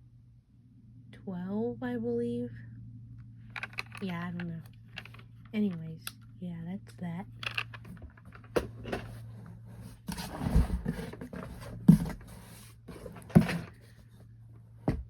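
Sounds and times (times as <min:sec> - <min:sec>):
low electrical hum: 0:00.0 - 0:15.0
objects knocking and thumping: 0:03.5 - 0:05.4, 0:07.4 - 0:09.2.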